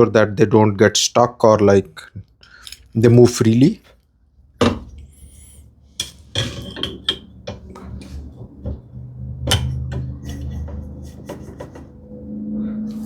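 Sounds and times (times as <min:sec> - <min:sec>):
metal tools clinking on workbench: 0:02.6 - 0:03.0.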